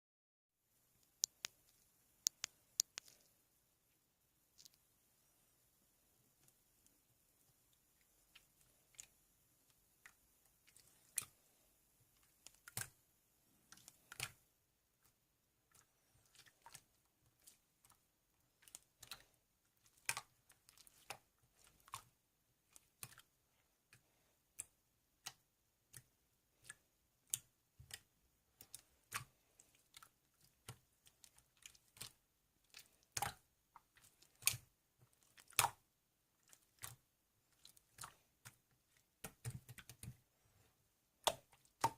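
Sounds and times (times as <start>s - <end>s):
faint clicks and taps: 1.0s - 3.4s, 4.5s - 4.9s, 12.0s - 13.0s, 15.0s - 41.9s.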